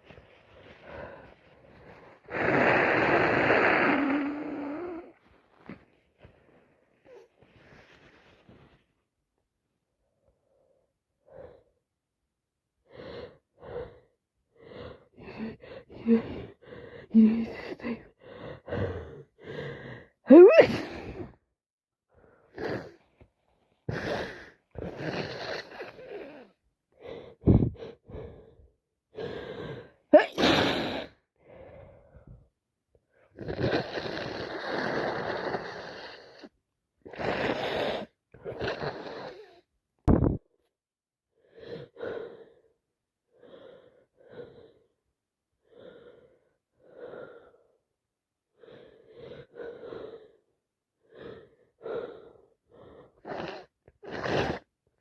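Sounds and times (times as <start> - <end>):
gasping breaths: 12.9 - 21.4, 23.8 - 32.5, 45.6 - 47.8, 48.5 - 54.7
person sneezing: 20.3 - 21.0, 30.2 - 31.1
sniffles: 53.2 - 54.7.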